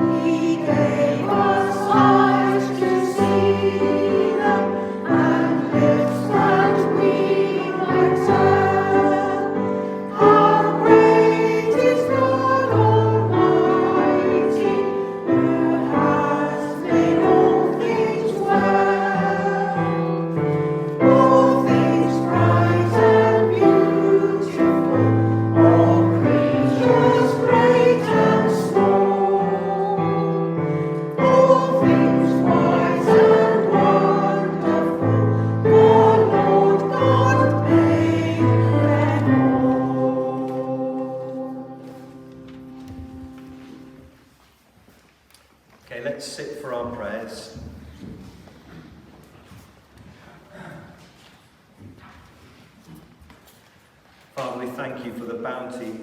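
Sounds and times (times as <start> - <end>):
group singing a hymn: 0.0 - 44.1.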